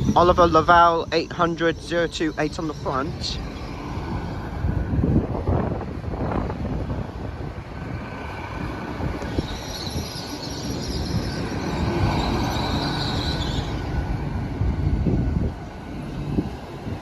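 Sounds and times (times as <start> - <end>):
train wheels squealing: 0.0 - 4.9, 8.2 - 14.2
train rumbling past: 0.0 - 17.0.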